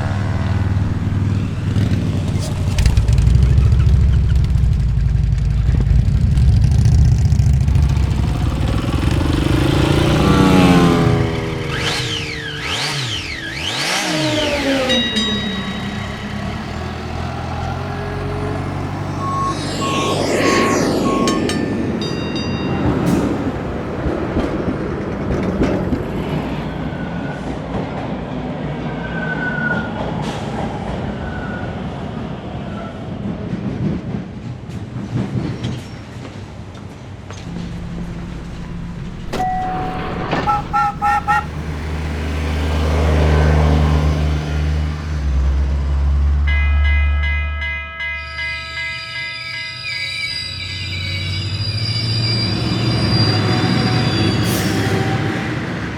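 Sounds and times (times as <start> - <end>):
rattling rumble with knocks: 0.0 - 9.7, 37.4 - 43.2
heavy vehicle engine hum: 0.0 - 26.2, 37.3 - 46.5
electronic beeps: 15.2 - 22.3, 37.4 - 41.6
car horn toots: 37.5 - 43.5.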